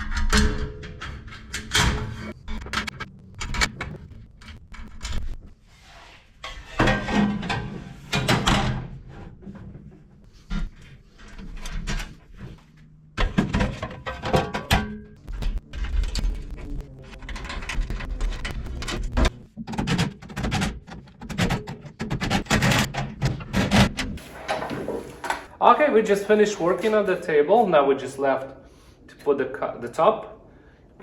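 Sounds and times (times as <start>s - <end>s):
metal parts clanking and rattling: 6.4s - 9.0s, 13.2s - 16.4s, 17.1s - 25.5s.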